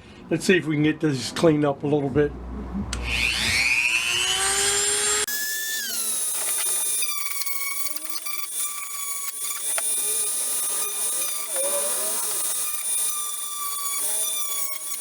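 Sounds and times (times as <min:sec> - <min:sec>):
rotary tool grinding metal: 0:03.0 - 0:15.0.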